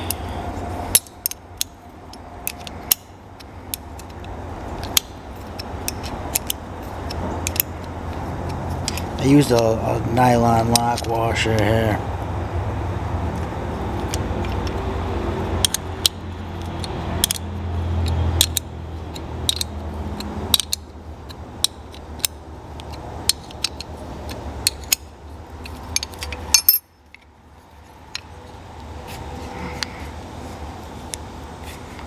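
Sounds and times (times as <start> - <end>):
small steel parts clinking: 0.0 - 12.0, 13.4 - 14.8, 15.5 - 28.6.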